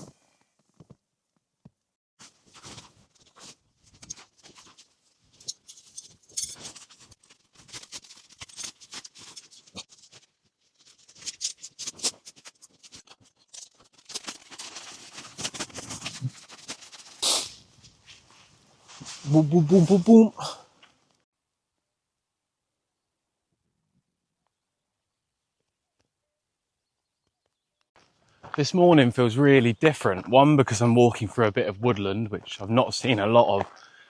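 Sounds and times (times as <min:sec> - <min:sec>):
close-up rustling: 0:02.2 - 0:21.1.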